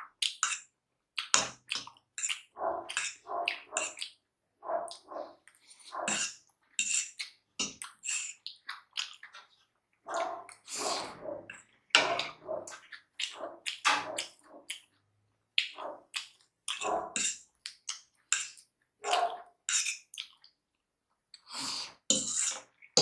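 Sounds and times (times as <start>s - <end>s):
chewing and lip smacks: 1.2s - 4.2s, 7.1s - 15.0s, 15.6s - 20.6s.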